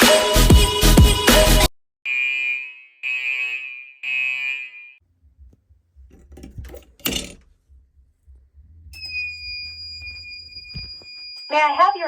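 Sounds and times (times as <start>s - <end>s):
fire alarm buzzing: 2.1s - 5.0s, 9.0s - 12.0s
low hum: 5.0s - 11.4s
rattling and clinking: 6.0s - 7.6s.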